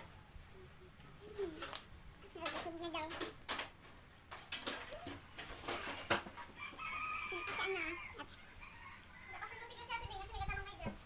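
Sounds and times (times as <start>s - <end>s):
rooster crowing: 6.5s - 9.7s.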